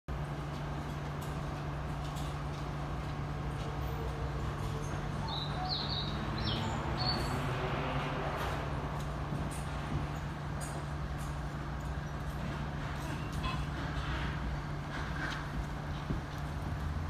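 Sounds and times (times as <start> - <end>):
high bird chirps: 5.3 - 7.4.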